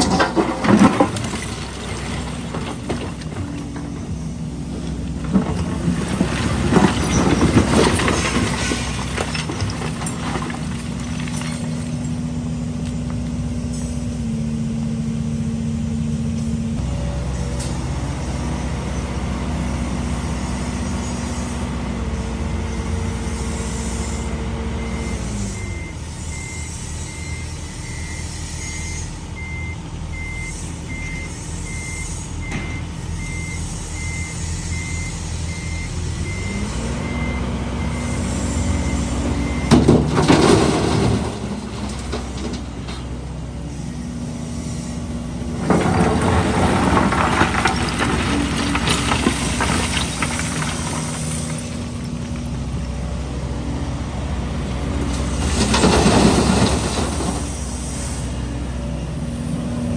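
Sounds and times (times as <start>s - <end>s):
heavy diesel engine running: 0.0s - 59.9s
reverse warning beeper: 24.8s - 39.8s.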